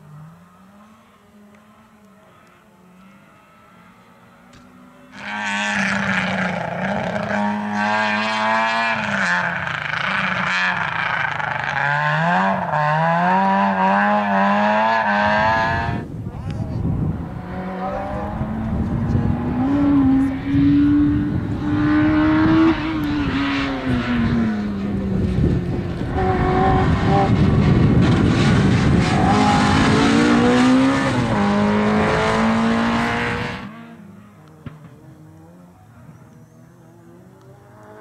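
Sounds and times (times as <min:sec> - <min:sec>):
rally car engine changing gear: 0:17.3 - 0:38.0.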